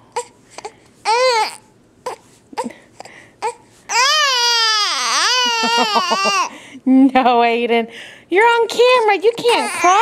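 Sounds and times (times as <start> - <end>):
baby crying loudly: 1.1 - 1.6, 3.4 - 6.5, 9.5 - 10.0.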